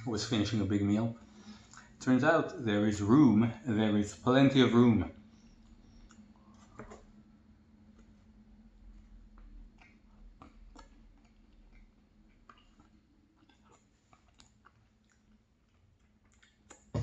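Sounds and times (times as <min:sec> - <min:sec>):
faint low hum: 0:00.0 - 0:17.0
soft chewing: 0:01.0 - 0:02.0, 0:05.1 - 0:17.0.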